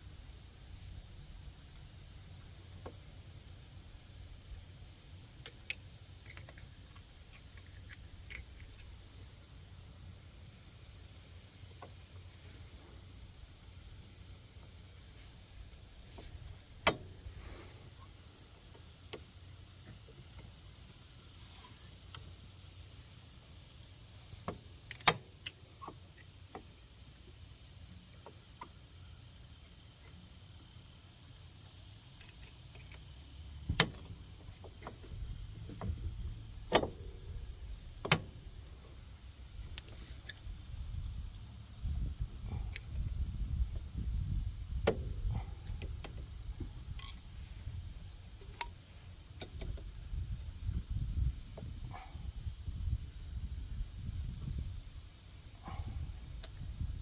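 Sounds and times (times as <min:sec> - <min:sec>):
steady low hum: 0:00.0 - 0:57.0
sharp click: 0:16.8 - 0:17.1, 0:24.5 - 0:26.0, 0:33.7 - 0:34.1, 0:38.0 - 0:38.3
handling thumps and rumble: 0:33.6 - 0:41.2.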